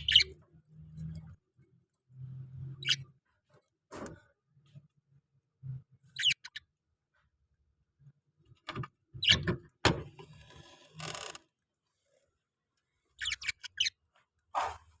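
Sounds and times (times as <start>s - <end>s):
parrots calling: 0.0s - 0.4s, 2.8s - 3.1s, 6.1s - 6.7s, 13.2s - 14.0s.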